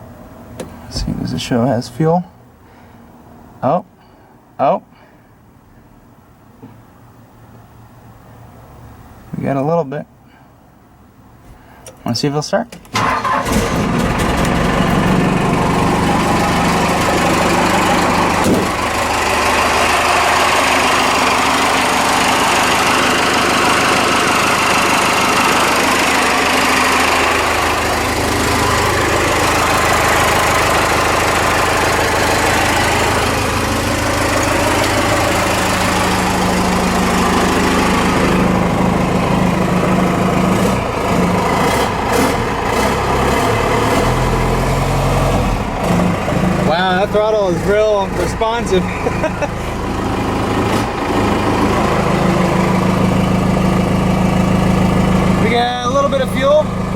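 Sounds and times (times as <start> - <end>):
diesel engine running: 12.8 - 56.9.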